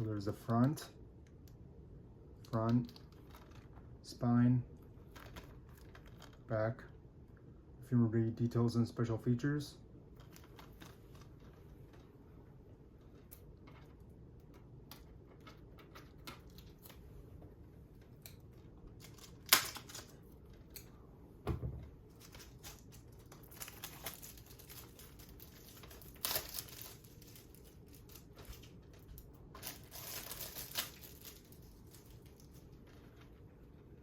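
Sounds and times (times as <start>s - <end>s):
plastic shrink-wrap tearing: 18.9s - 20.2s, 22.1s - 32.8s
dull thump: 21.4s - 21.9s.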